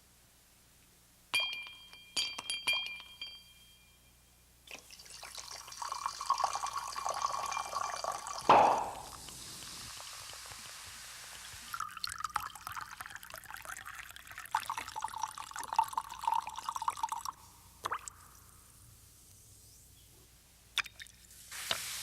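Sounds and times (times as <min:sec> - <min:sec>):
glass clinking: 0:01.3 - 0:09.3
liquid pouring into glass: 0:04.7 - 0:10.7, 0:11.7 - 0:18.3
loud plop: 0:08.5 - 0:09.3.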